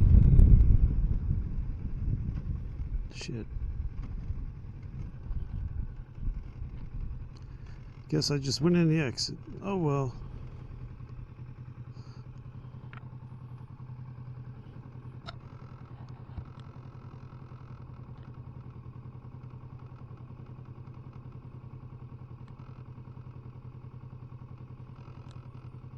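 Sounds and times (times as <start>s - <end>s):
motorcycle engine running at low revs: 0.0s - 25.9s
faint clicks: 6.4s - 8.1s, 25.0s - 25.7s.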